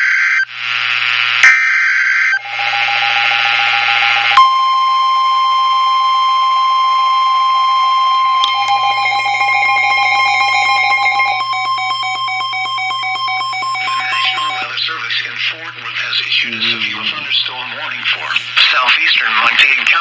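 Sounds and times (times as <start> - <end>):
steady warning alarm tone: 2.3 - 18.8
harsh buzzing digital data: 2.4 - 4.5, 8.2 - 18.7.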